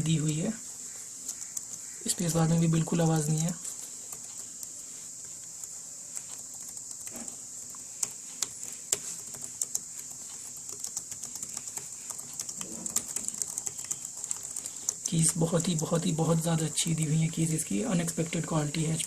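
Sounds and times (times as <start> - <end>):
steady high hiss: 0.0 - 19.0
keyboard keystroke clicks: 5.5 - 16.4.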